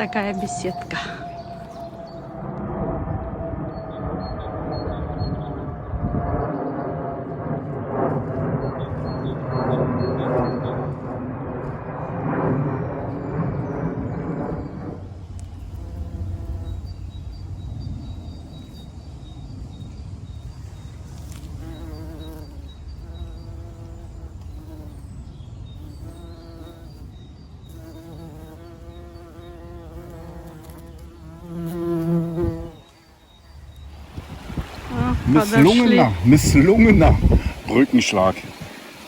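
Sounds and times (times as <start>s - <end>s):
flying insect buzzing: 15.4s - 17.2s, 21.0s - 25.1s, 25.8s - 39.0s.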